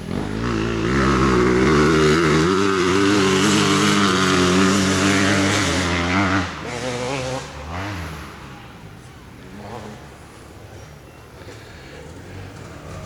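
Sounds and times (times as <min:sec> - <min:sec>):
dirt bike engine running: 0:00.0 - 0:08.5.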